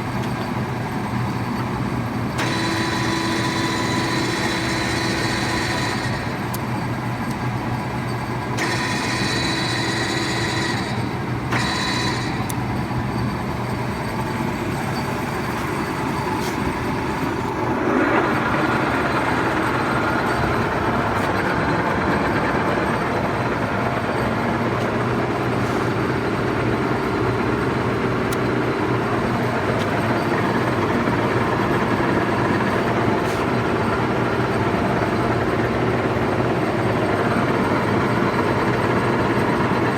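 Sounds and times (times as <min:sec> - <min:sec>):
lathe running idle: 0:00.0 - 0:39.9.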